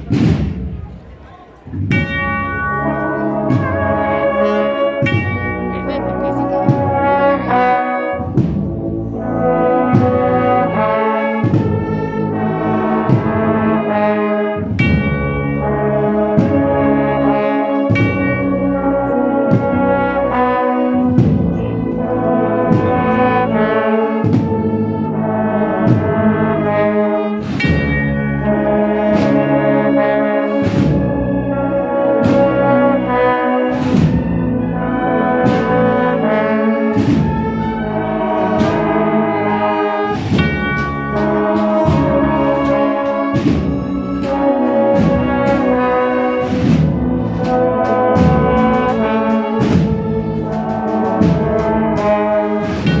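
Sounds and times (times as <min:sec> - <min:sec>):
drum strokes: 0:00.0 - 0:12.0, 0:27.4 - 0:31.3, 0:32.2 - 0:53.0
brass band playing: 0:00.0 - 0:53.0.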